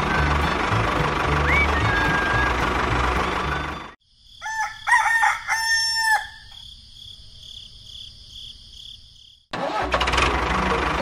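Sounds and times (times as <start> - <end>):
rooster crowing: 4.4 - 6.6.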